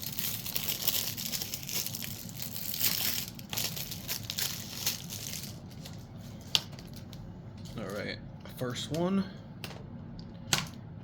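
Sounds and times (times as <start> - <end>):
plastic wrapping crinkling: 0.0 - 8.0.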